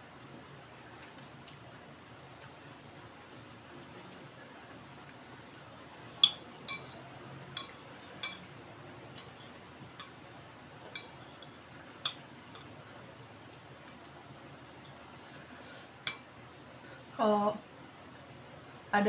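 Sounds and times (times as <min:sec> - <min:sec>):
utensils clinking against a bowl: 0:06.2 - 0:07.0, 0:07.6 - 0:08.5, 0:10.9 - 0:12.8.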